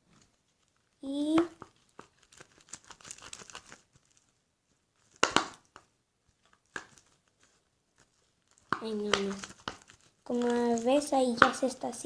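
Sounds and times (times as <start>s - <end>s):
slime squelching: 1.0s - 12.0s
sticky slime clicks and crackles: 5.0s - 7.2s, 8.5s - 11.7s.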